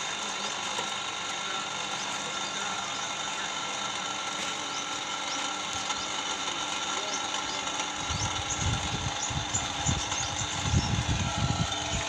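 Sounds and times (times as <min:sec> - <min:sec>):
winch motor whirring: 0:00.0 - 0:12.0.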